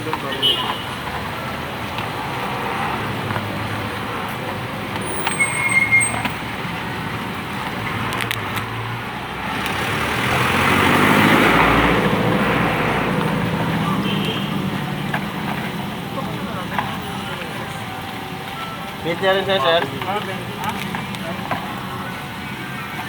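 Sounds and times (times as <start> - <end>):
street traffic: 0.0 - 23.0
vehicle passing close: 0.9 - 23.0
high squeaks: 5.0 - 6.6.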